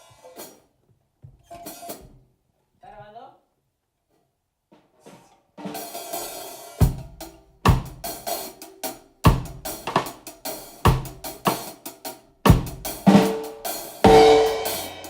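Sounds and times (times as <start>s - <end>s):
snare drum: 5.1s - 15.0s
kick drum: 6.8s - 8.0s, 9.3s - 9.6s, 10.9s - 11.2s, 12.5s - 12.8s
cymbals: 12.6s - 15.0s.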